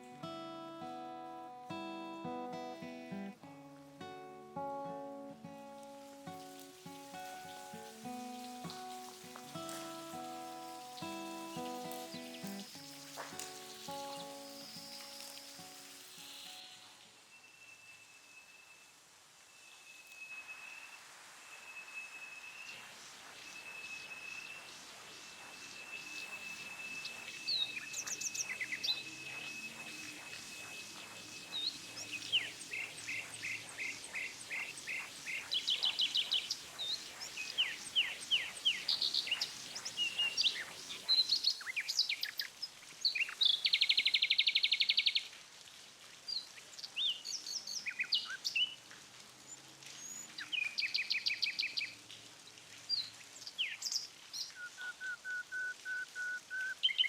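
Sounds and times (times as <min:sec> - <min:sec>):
birds singing: 0:06.3 - 0:18.0, 0:22.1 - 0:45.4, 0:46.4 - 0:48.8, 0:49.4 - 0:57.0
thin steady high tone: 0:16.2 - 0:41.2.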